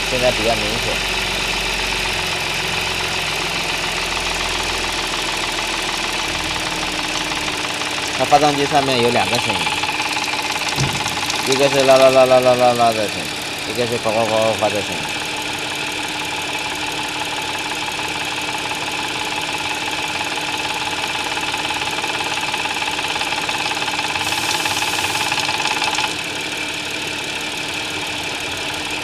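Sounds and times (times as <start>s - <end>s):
engine croaking: 0.0s - 19.4s
car engine idling: 0.0s - 29.0s
engine rattle: 0.0s - 29.0s.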